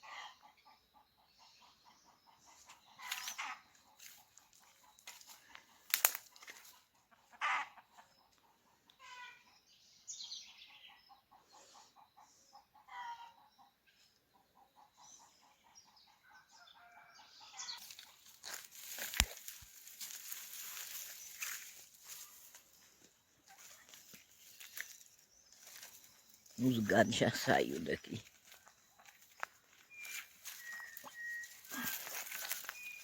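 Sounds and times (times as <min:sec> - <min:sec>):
chickens clucking: 0:01.4 - 0:09.3, 0:11.0 - 0:15.8
chicken squawks: 0:07.3 - 0:07.8.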